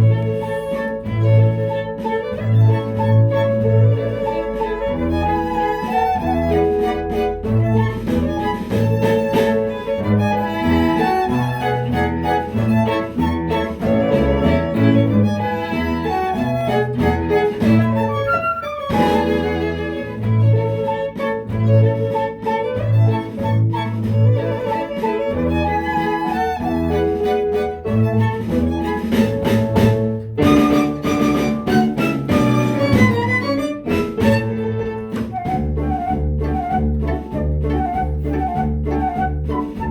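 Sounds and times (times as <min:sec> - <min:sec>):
instrumental ensemble music: 0:00.0 - 0:39.9.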